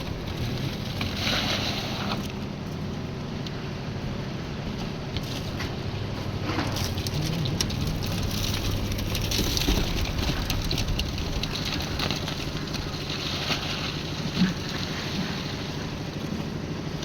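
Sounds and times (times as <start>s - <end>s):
concrete mixer engine hum: 0.0s - 17.0s
clattering and scraping: 5.2s - 12.9s.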